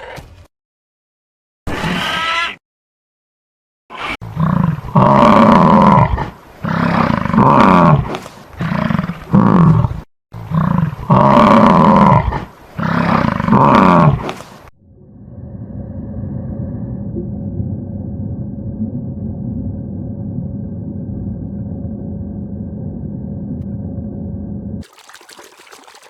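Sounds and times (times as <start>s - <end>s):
large animal roaring: 4.2s - 14.3s.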